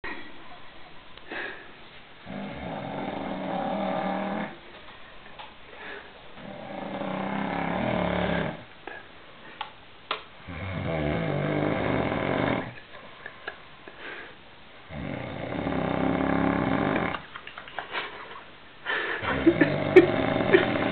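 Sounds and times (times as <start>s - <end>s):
quiet breathing: 1.2s - 9.8s, 13.8s - 16.6s, 18.8s - 19.4s
man snoring: 2.3s - 4.6s, 6.4s - 8.6s, 10.4s - 12.8s, 14.9s - 17.2s, 19.2s - 20.9s.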